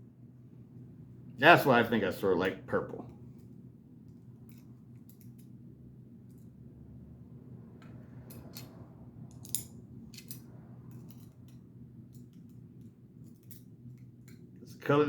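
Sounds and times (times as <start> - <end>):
steady low hum: 0.0 - 15.0
metal knife parts clicking: 8.3 - 8.7, 9.3 - 14.4.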